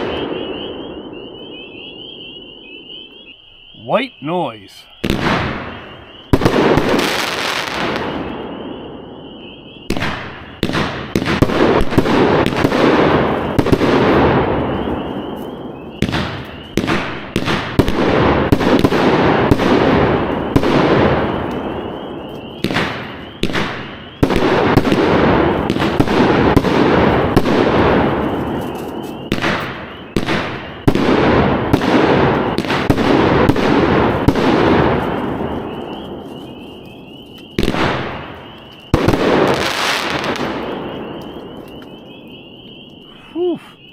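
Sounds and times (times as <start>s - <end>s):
firework shots and breaks: 0.0s - 2.2s, 4.6s - 9.2s, 9.8s - 15.2s, 15.8s - 42.3s.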